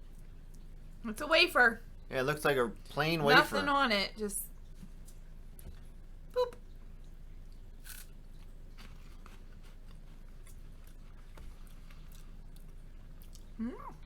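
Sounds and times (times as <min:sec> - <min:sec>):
chewing crisp wafer cookie: 0:06.6 - 0:14.0.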